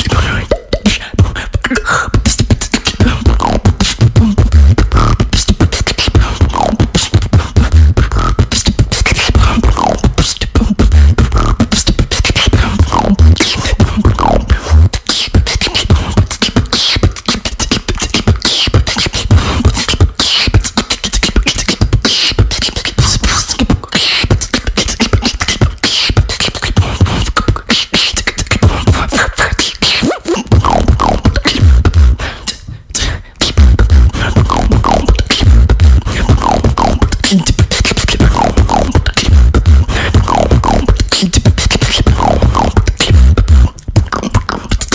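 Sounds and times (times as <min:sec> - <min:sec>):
person beatboxing: 0:00.0 - 0:44.9
gliding whistle-like vocal sounds: 0:33.4 - 0:43.6.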